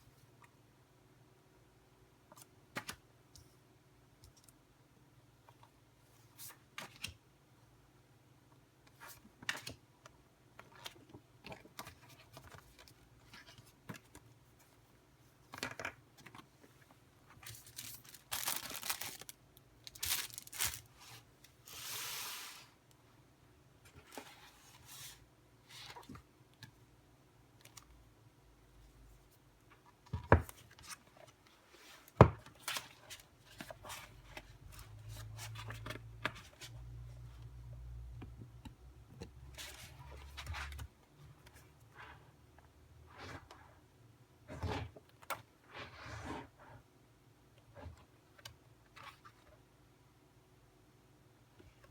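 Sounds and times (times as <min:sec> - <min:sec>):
plastic and paper rustling: 0:17.4 - 0:22.6
packaging tearing: 0:17.6 - 0:20.9.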